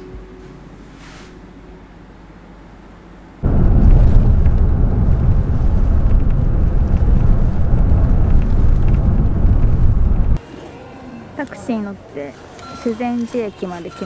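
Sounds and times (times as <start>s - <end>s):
loud low rumbling: 3.4s - 10.4s.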